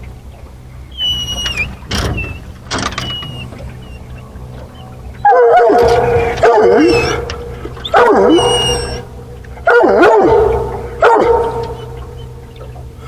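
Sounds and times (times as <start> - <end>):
steady low hum: 0.0 - 13.0
dog baying: 5.2 - 9.1, 9.7 - 12.4.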